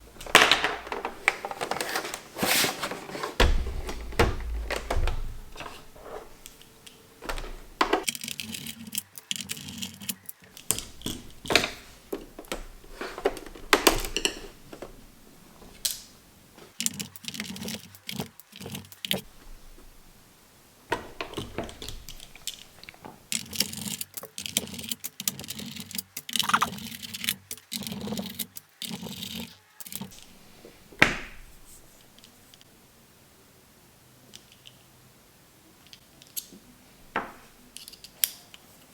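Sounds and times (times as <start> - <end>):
small hard objects clattering: 0.0 - 4.0.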